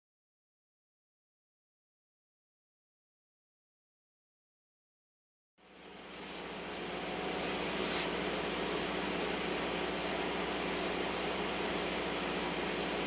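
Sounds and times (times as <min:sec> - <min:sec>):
dust collector running: 0:05.6 - 0:13.0.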